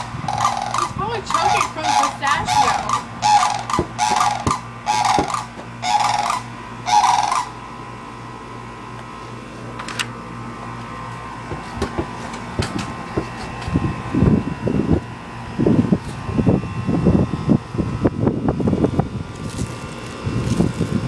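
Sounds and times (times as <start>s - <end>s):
sandhill cranes calling: 0.0s - 7.6s
steady hum: 0.0s - 21.0s.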